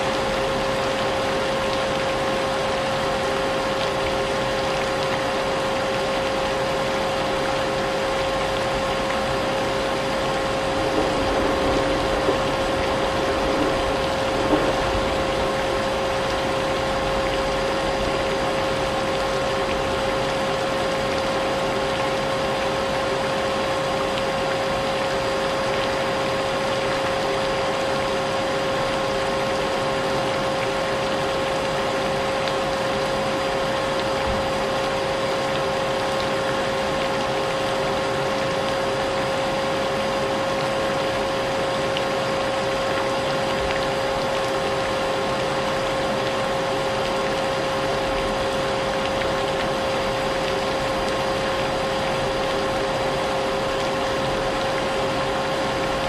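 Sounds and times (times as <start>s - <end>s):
rain hissing: 8.4s - 20.8s.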